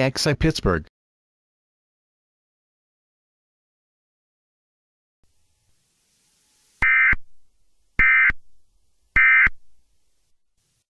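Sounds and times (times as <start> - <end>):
screechy digital data tones: 6.8 - 7.2.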